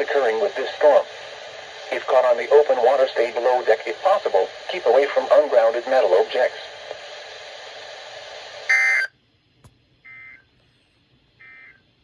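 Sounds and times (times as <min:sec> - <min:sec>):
radio static hiss: 0:00.0 - 0:09.1
buzzy digital data tones: 0:08.7 - 0:09.1.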